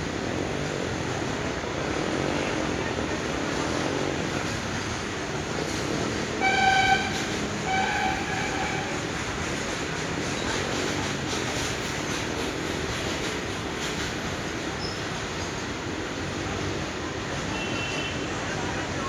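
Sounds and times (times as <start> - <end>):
goods train passing: 0.0 - 19.0
locomotive horn honking: 6.4 - 9.1.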